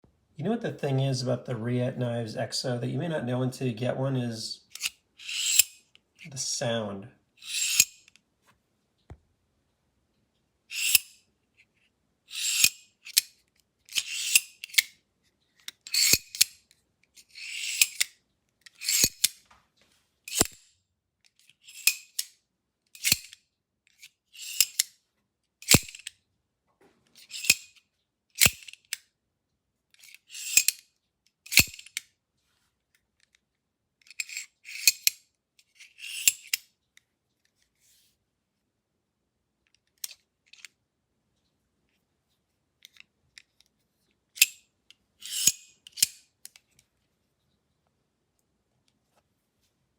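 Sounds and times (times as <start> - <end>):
knife blade locking click: 45.3 - 46.2.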